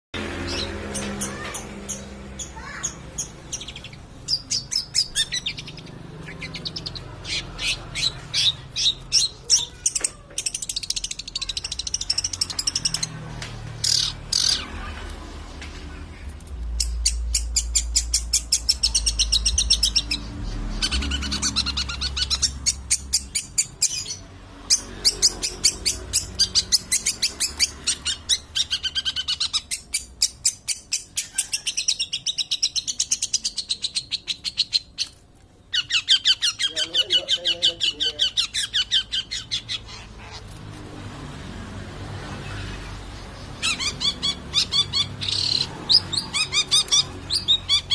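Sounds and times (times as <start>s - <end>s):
shrike high chattering song: 0.2s - 35.0s.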